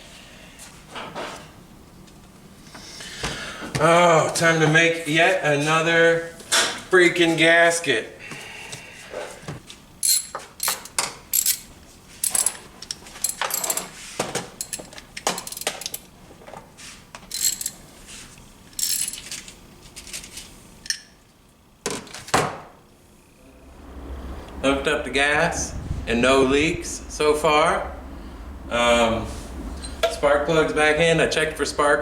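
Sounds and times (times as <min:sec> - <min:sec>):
tools and metal parts handled: 0:10.0 - 0:16.6, 0:17.2 - 0:17.9, 0:18.7 - 0:21.1.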